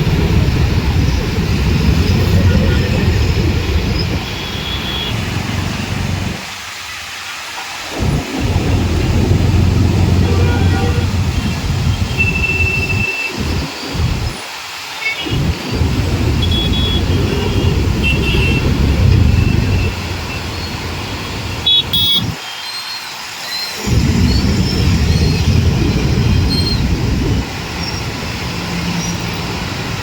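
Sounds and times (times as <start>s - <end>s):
wind buffeting microphone: 0.0s - 6.4s, 7.9s - 14.4s, 15.3s - 22.4s, 23.8s - 28.2s
road traffic on a bridge: 0.0s - 23.2s, 23.8s - 30.0s
distant horn toots: 9.2s - 13.4s.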